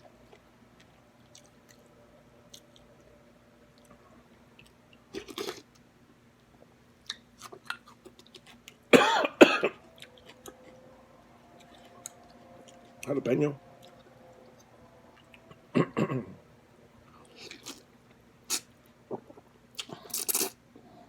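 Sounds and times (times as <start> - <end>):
person chewing: 2.5 - 2.8, 4.6 - 5.7, 17.2 - 17.9, 18.5 - 20.6
person coughing: 8.9 - 9.8, 15.7 - 16.4.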